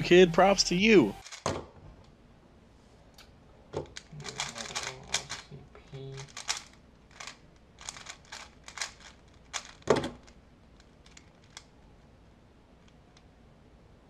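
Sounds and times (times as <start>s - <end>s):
puzzle cube plastic clicks: 1.2s - 1.5s, 3.8s - 5.4s, 6.2s - 11.8s.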